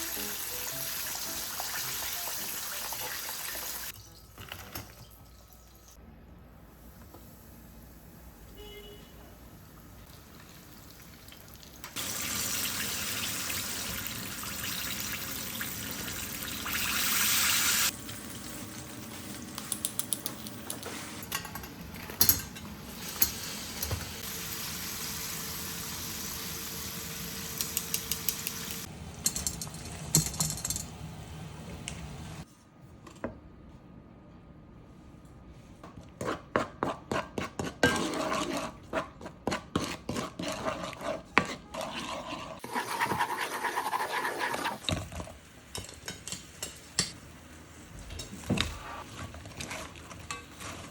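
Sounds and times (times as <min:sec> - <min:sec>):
chicken sizzling in hot oil: 0:00.0 - 0:03.9, 0:10.2 - 0:19.4, 0:24.2 - 0:28.9.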